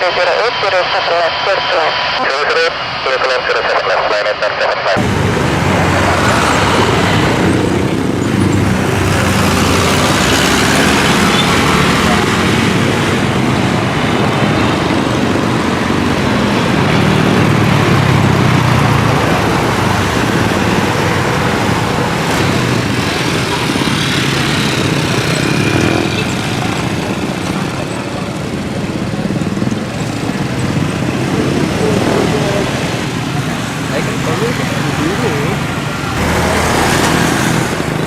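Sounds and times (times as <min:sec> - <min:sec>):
jet airliner engine rushing: 0:00.0 - 0:38.0.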